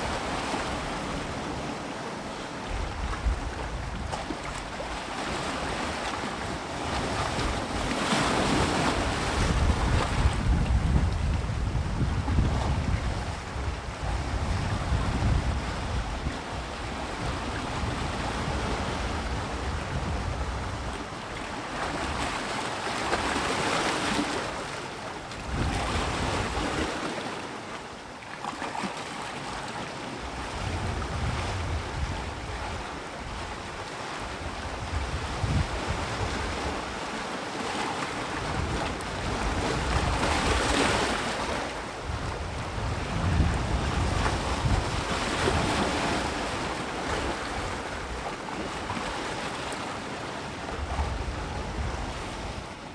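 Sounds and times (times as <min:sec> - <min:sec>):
sea waves breaking on shore: 0:00.0 - 0:52.9
wind rumbling on microphone: 0:02.6 - 0:05.0, 0:05.6 - 0:22.3, 0:25.3 - 0:27.0, 0:30.2 - 0:37.1, 0:38.3 - 0:49.1, 0:50.6 - 0:52.9.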